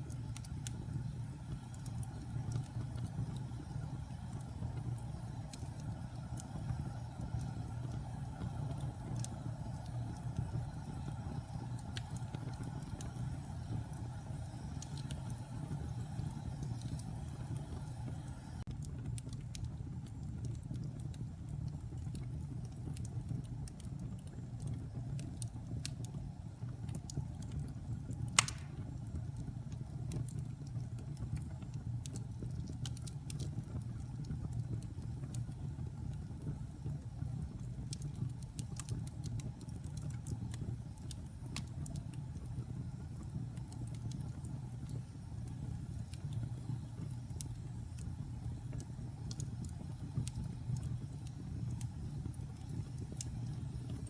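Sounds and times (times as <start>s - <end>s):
wood fire crackling: 0.0s - 54.0s
loud pop from fire: 28.4s - 29.0s.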